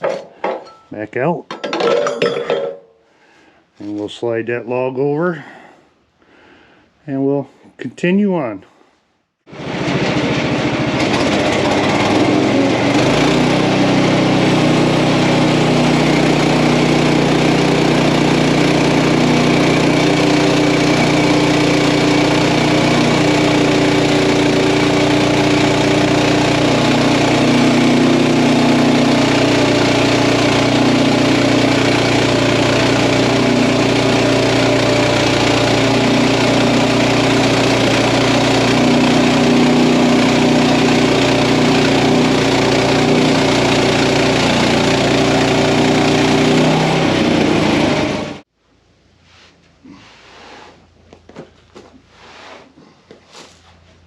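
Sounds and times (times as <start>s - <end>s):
small gasoline engine running: 9.5s - 48.5s.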